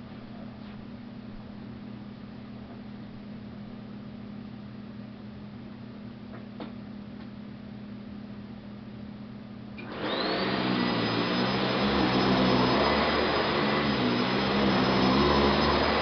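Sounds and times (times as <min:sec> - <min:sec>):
upright vacuum cleaner motor whine: 0:09.8 - 0:16.0.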